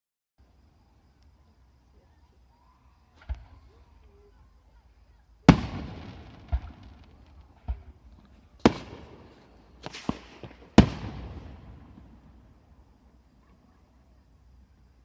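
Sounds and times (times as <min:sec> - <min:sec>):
fireworks bangs with echo: 0:05.4 - 0:12.9.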